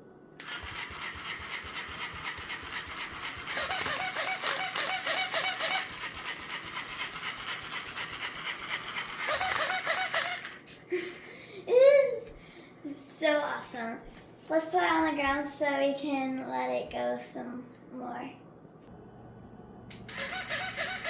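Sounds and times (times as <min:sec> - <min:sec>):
quick repeating rattle: 0:00.4 - 0:10.6, 0:20.1 - 0:21.0
toy motor and gears whirring: 0:00.4 - 0:10.7, 0:20.1 - 0:21.0.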